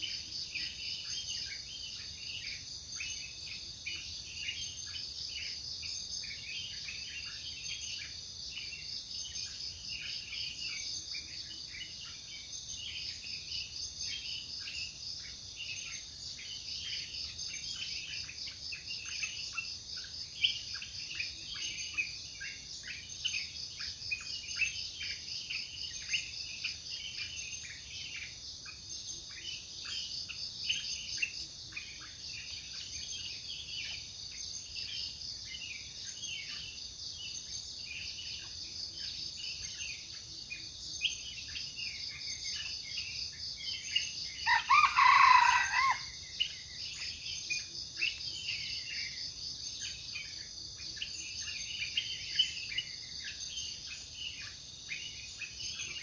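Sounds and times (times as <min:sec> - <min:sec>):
forest insects droning: 0:00.0 - 0:56.0
junglefowl crowing: 0:44.4 - 0:46.2.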